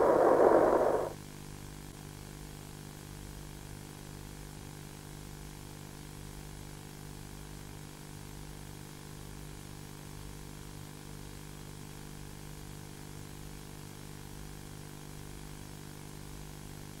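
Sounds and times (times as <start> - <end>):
even hiss: 0.0 - 1.2
steady low hum: 0.0 - 1.2.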